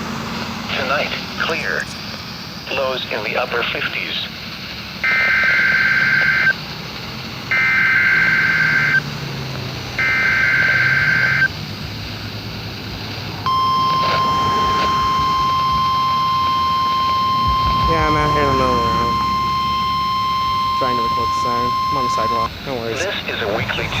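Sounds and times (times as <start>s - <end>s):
screeching digital data bursts: 2.7s - 6.6s, 7.5s - 9.0s, 10.0s - 11.5s, 13.4s - 24.0s
high warning alarm tone: 5.0s - 6.6s, 7.5s - 9.1s, 10.0s - 11.6s, 13.4s - 24.0s.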